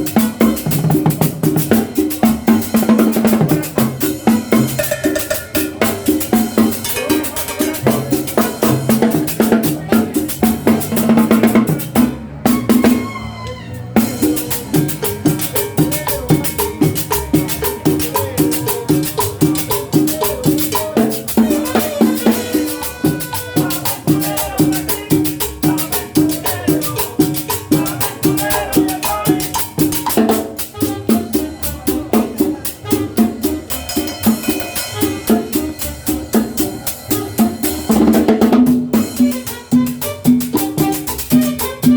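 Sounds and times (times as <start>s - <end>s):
cowbell: 0.0s - 13.0s, 14.0s - 38.3s, 38.9s - 41.9s
dance music with fast drum beat: 14.0s - 31.3s.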